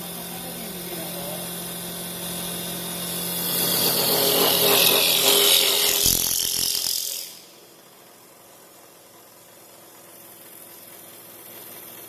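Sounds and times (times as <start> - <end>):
lathe motor hum: 0.0 - 7.5
cutter hissing into wood: 0.0 - 7.6.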